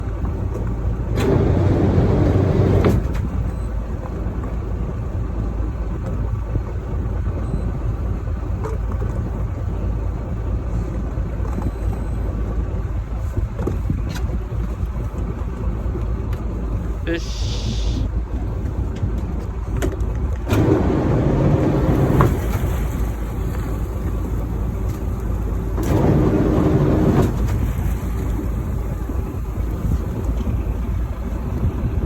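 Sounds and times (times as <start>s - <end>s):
boat engine rumbling: 0.0s - 32.0s.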